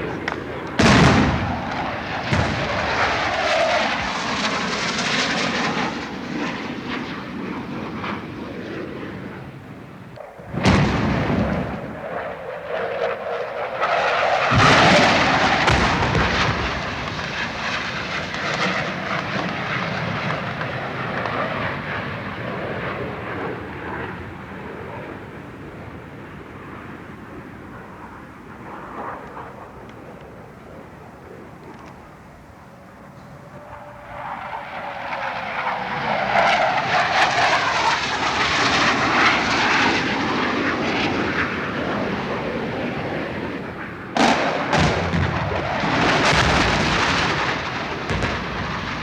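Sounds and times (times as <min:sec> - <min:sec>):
explosions with long rumble: 0:00.0 - 0:05.7, 0:10.2 - 0:12.3, 0:14.5 - 0:21.8, 0:44.1 - 0:49.0
aircraft engine noise: 0:00.0 - 0:49.0.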